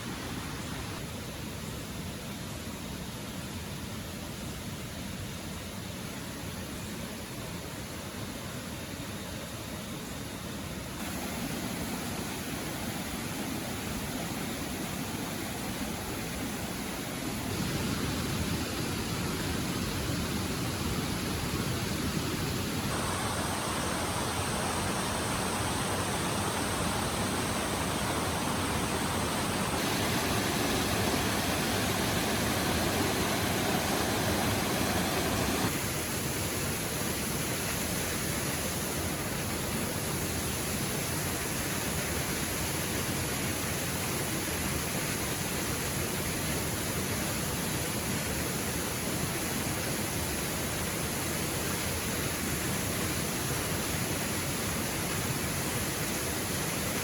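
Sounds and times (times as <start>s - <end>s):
rushing river and waterfall: 0.0s - 1.4s, 11.0s - 57.0s.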